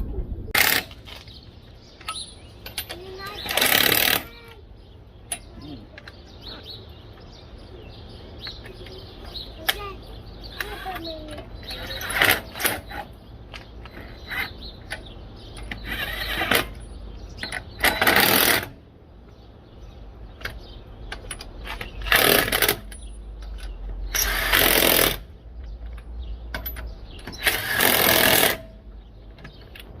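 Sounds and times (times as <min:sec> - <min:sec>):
tools clicking and knocking: 0:02.0 - 0:04.2, 0:05.3 - 0:06.2, 0:20.4 - 0:28.6
power tool bursts: 0:03.4 - 0:04.3, 0:24.1 - 0:25.3, 0:27.3 - 0:28.7.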